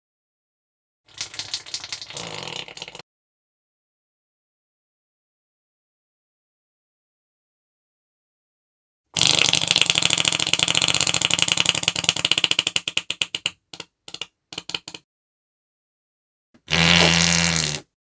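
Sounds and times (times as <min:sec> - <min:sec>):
sputtering fart: 0:02.0 - 0:03.0, 0:09.2 - 0:15.0, 0:16.6 - 0:18.0.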